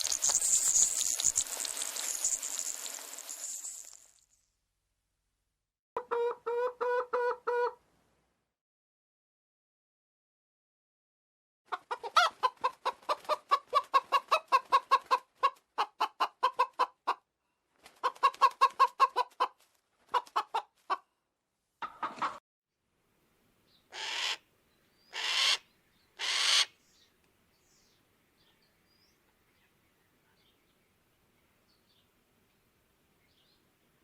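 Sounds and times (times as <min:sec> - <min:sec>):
animal clucking calls: 0:11.7 - 0:17.2.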